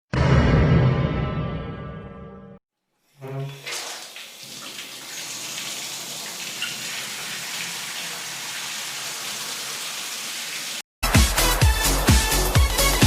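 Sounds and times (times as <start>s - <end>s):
water running into bathtub: 2.9s - 10.8s.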